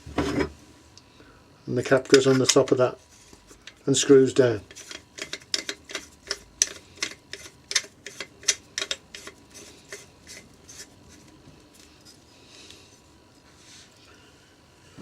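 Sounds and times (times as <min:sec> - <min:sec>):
screw cap clicking: 0:04.7 - 0:10.4.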